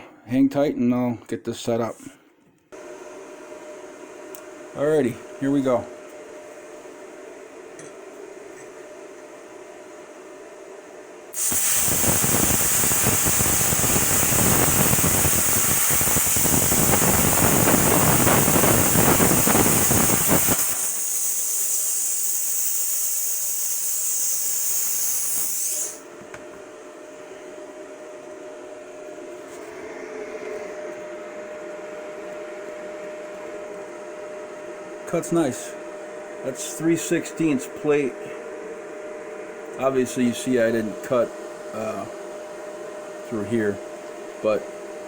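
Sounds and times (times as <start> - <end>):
plasma cutter arc crackling hiss: 11.3 - 26.0
torch air hissing: 11.3 - 26.0.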